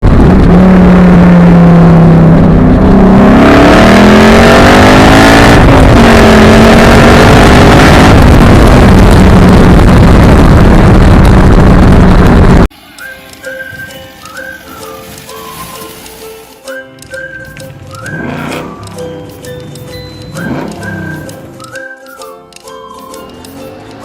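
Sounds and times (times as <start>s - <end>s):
loud car engine accelerating: 0.0s - 12.7s, 17.6s - 21.8s.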